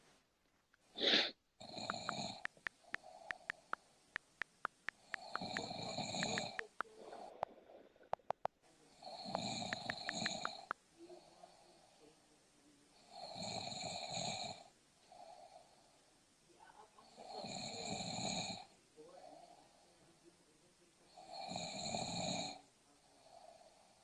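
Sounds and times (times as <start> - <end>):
sharp little clicks: 0.6 - 8.6, 9.2 - 10.8
person snoring: 1.0 - 3.8, 4.9 - 8.3, 9.0 - 11.7, 13.0 - 15.7, 17.2 - 18.7, 21.2 - 22.6.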